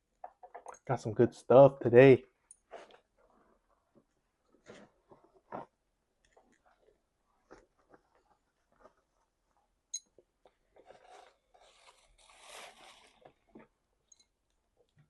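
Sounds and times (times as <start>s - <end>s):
rustle or scrape: 10.8s - 13.4s.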